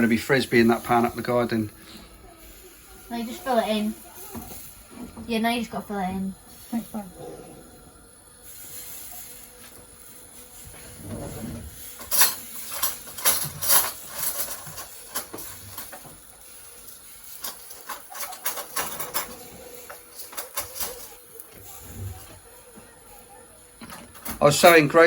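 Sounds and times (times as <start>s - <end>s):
batter sizzling in frying pan: 0.0s - 7.0s, 8.0s - 23.8s
utensils tapping against pan: 11.9s - 21.5s.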